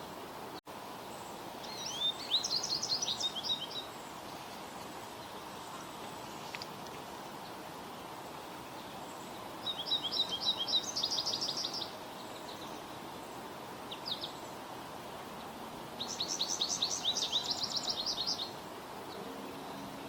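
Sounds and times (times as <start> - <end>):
steady background hiss: 0.0 - 20.0
bird twittering song: 1.0 - 6.7, 8.7 - 14.6, 15.4 - 20.0.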